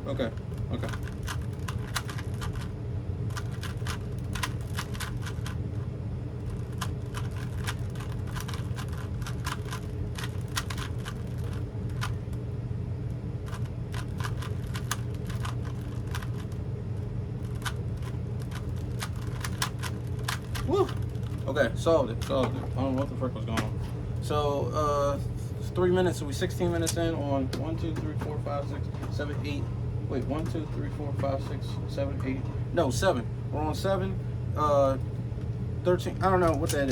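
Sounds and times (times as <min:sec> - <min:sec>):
low hum: 0:00.0 - 0:36.9
puzzle cube clicking: 0:03.3 - 0:05.6, 0:06.5 - 0:12.2, 0:17.5 - 0:21.0.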